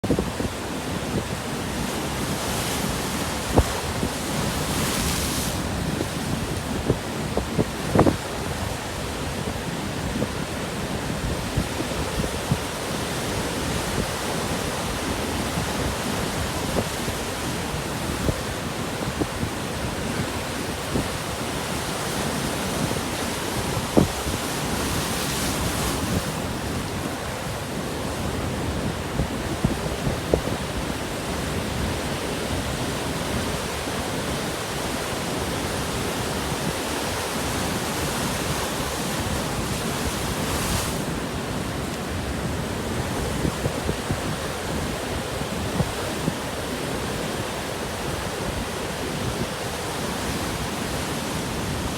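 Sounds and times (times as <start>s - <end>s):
ocean surf breaking: 0.0s - 51.9s
wind rushing over microphone: 0.0s - 51.9s.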